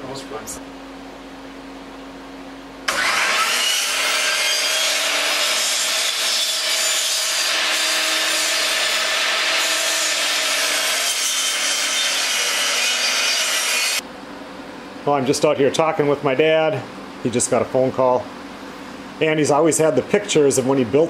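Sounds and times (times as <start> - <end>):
power tool motor: 2.9 - 14.0.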